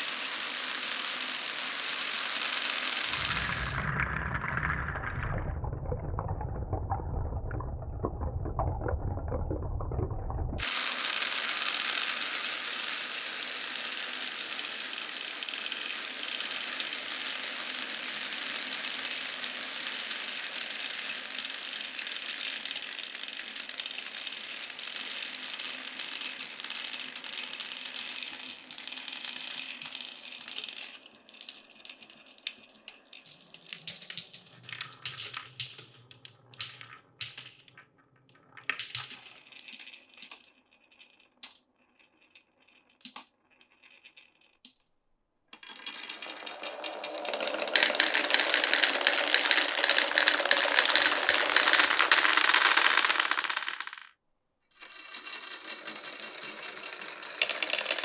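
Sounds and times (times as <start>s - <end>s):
marbles rattling on track: 0.0s - 44.8s, 45.6s - 54.2s, 54.8s - 58.0s
low hum: 3.1s - 10.6s.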